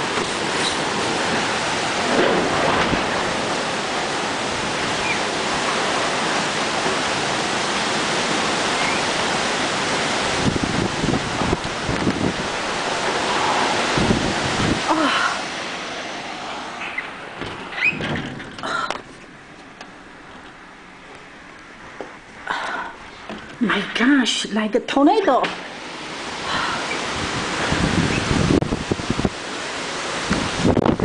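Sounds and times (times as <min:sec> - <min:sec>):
wind gusts buffeting microphone: 0:00.0 - 0:19.0, 0:25.7 - 0:31.0
storm wind on microphone: 0:00.0 - 0:19.1, 0:25.7 - 0:31.0.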